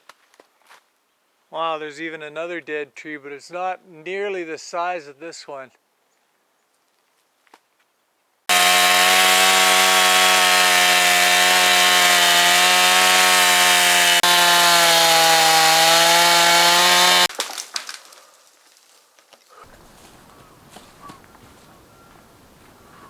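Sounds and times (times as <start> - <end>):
chainsaw cutting wood: 8.5 - 19.0.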